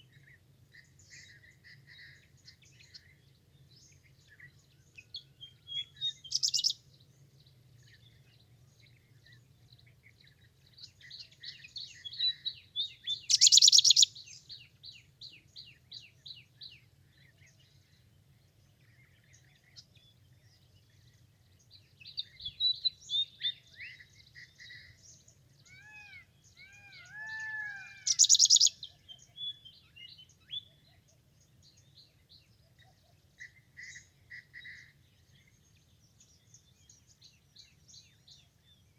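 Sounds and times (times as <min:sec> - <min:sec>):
birds chirping: 0:00.0 - 0:18.1, 0:18.7 - 0:38.9
whistled bird notes: 0:11.9 - 0:14.2, 0:25.7 - 0:30.8.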